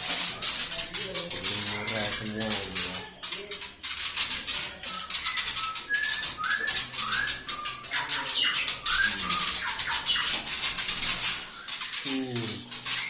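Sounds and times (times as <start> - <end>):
high-pitched bird chatter: 0.0 - 13.0
bird whistled notes: 4.8 - 13.0.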